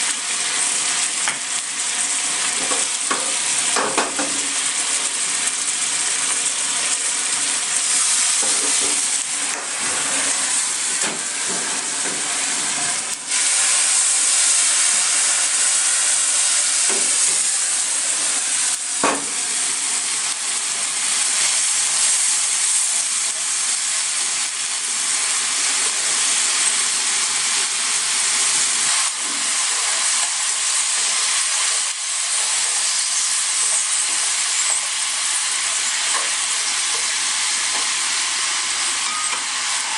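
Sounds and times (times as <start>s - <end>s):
chicken sizzling in a frying pan: 0.0s - 39.9s.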